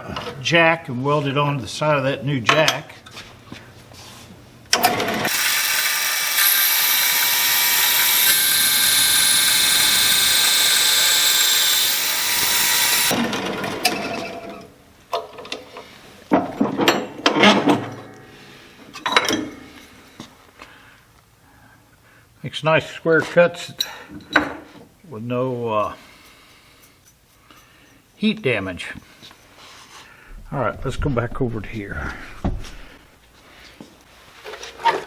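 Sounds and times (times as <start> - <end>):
bandsaw cutting metal tubing: 5.2 - 13.2.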